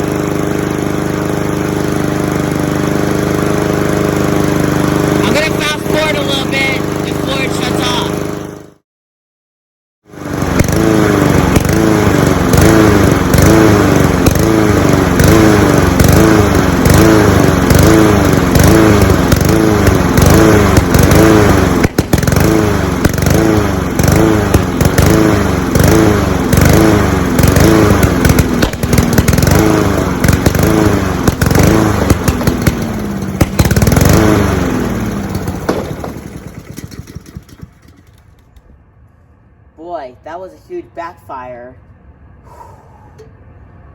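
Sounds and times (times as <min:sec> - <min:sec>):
lawn mower engine running: 0:00.0 - 0:08.8, 0:10.1 - 0:38.8
engine popping as it dies: 0:15.2 - 0:38.6.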